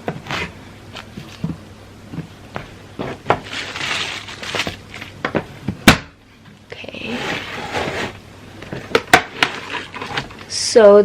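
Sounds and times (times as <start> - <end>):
plastic rustling: 0.1 - 5.5, 7.3 - 10.6.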